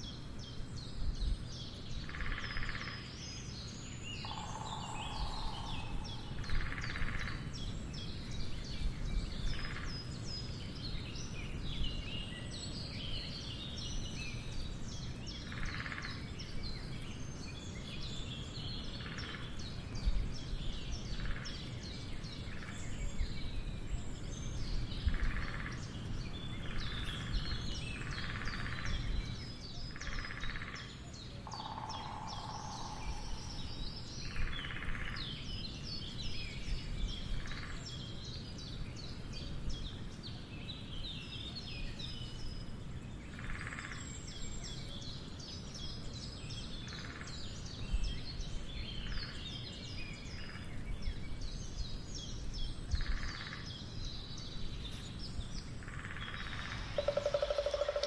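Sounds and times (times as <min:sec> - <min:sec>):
small birds chirping: 0:56.2 - 0:58.0
woodpecker drumming: 0:56.5 - 0:58.0.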